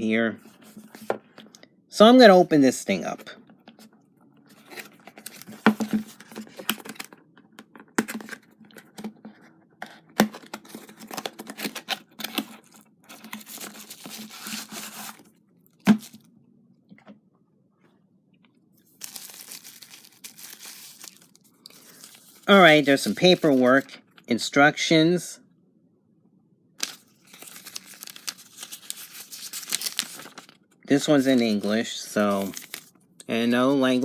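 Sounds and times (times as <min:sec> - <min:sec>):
packaging tearing and crinkling: 0:10.2 - 0:15.3, 0:19.0 - 0:23.7, 0:26.8 - 0:30.6, 0:31.2 - 0:32.9.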